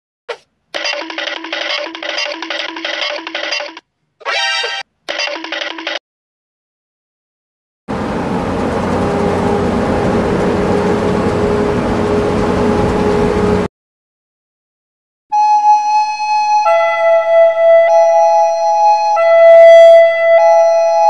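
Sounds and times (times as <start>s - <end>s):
vehicle engine and road noise: 7.9s - 13.7s.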